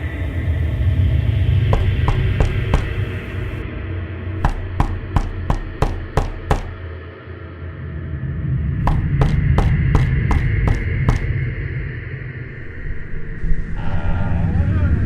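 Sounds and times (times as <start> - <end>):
sharp evenly spaced knocks: 1.7 - 3.6, 4.4 - 6.9, 8.8 - 11.5
low rumble: 6.7 - 15.0.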